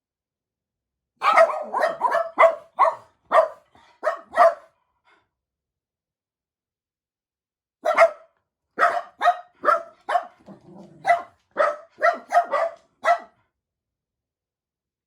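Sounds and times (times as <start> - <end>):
dogs barking excitedly: 1.2 - 4.7, 7.8 - 13.4.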